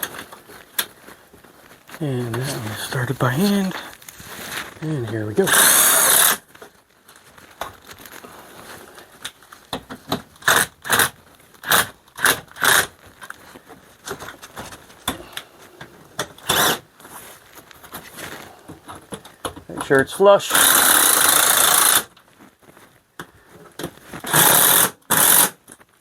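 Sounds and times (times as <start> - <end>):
bolts tightening scraping: 4.8 - 6.5, 16.1 - 16.9, 18.7 - 22.2, 23.7 - 25.8.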